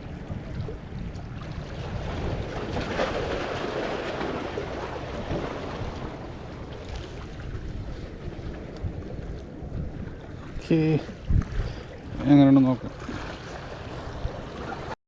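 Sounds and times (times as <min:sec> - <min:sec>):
wind buffeting microphone: 0:00.0 - 0:15.0
waves washing against rocks: 0:01.4 - 0:09.0.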